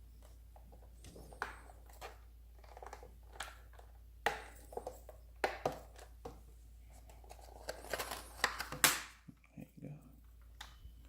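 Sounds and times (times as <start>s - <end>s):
hard plastic clicking and scraping: 0.2s - 6.4s.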